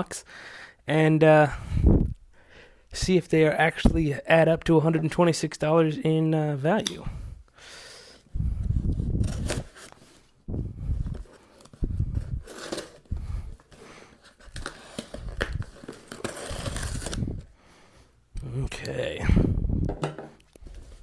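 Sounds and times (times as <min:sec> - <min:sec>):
tape and cardboard tearing: 0:09.1 - 0:10.0, 0:11.6 - 0:13.1, 0:14.2 - 0:17.3.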